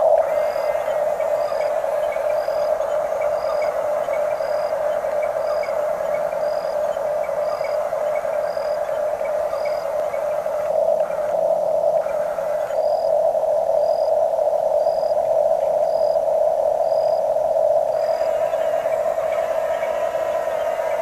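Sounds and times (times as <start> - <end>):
electric motors whining: 18.0 - 21.0.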